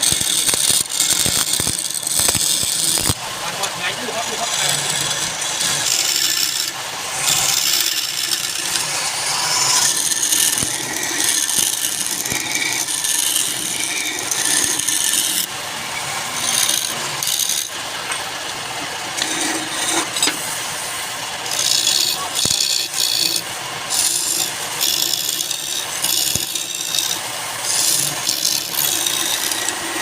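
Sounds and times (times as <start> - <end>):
wood scraping on a lathe: 0.0 - 30.0.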